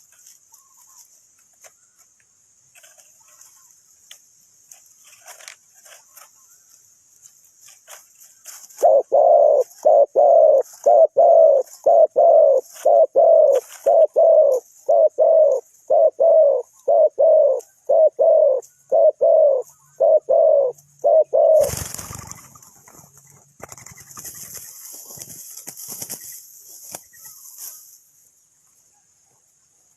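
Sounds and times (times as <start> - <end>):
brief rustling: 2.7 - 6.4
dove cooing: 8.6 - 22.6.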